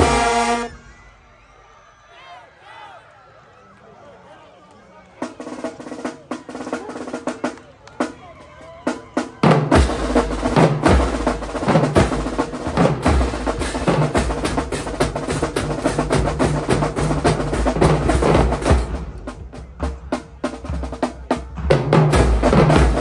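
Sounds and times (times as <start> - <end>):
snare and bass drums: 8.9 - 23.0.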